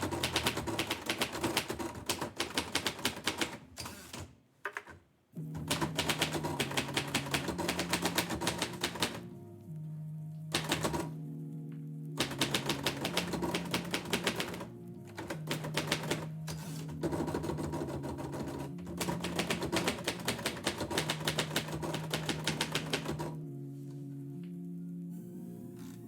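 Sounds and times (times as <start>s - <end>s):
typewriter keys striking: 0.0s - 5.0s, 5.6s - 9.2s, 10.5s - 11.1s, 12.2s - 23.4s
soft instrumental music: 5.3s - 26.0s.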